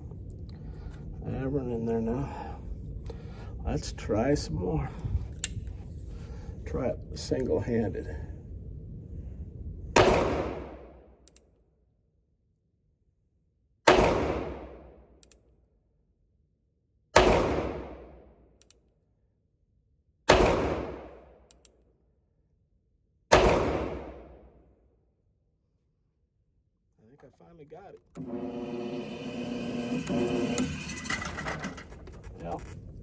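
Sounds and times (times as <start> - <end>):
revolver shots with echo: 10.0 - 10.9, 13.9 - 15.0, 17.2 - 18.2, 20.3 - 21.3, 23.3 - 24.5
faint clicks: 11.2 - 11.5.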